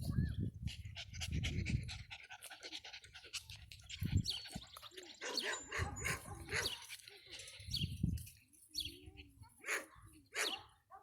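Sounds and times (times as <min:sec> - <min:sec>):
puppies panting: 0:00.5 - 0:07.7.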